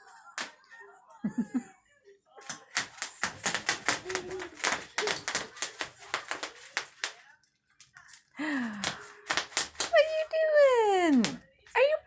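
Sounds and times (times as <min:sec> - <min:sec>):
bubble wrap popping: 0:02.4 - 0:07.2, 0:08.6 - 0:10.4.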